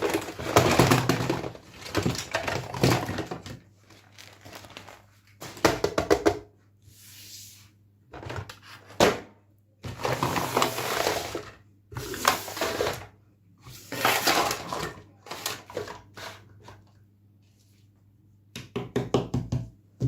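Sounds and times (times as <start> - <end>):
plastic and cardboard crinkling: 0.0 - 5.8.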